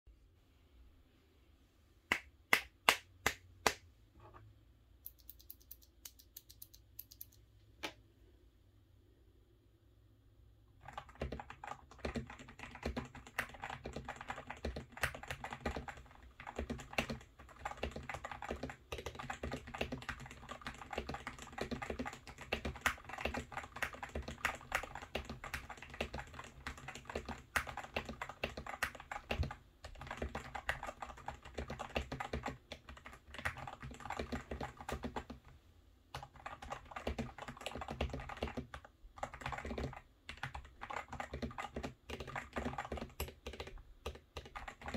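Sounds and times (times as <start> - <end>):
mechanical keyboard typing: 5.1 - 7.4, 10.8 - 35.5, 36.1 - 44.9.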